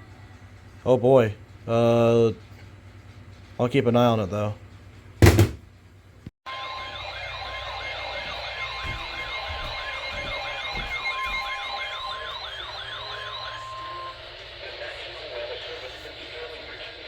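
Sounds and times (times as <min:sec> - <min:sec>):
loud thump: 0:05.2 - 0:05.6
electronic siren yelping: 0:06.5 - 0:14.2.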